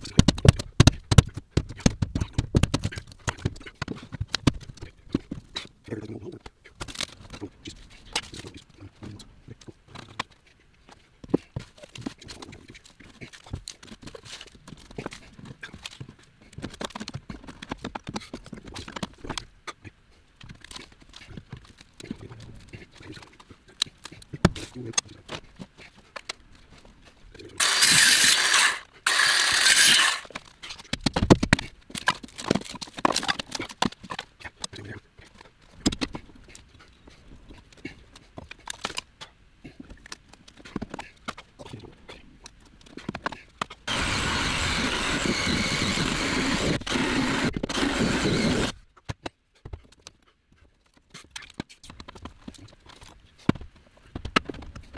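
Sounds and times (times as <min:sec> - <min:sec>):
power tool running: 0:27.6 - 0:30.3, 0:43.9 - 0:48.7.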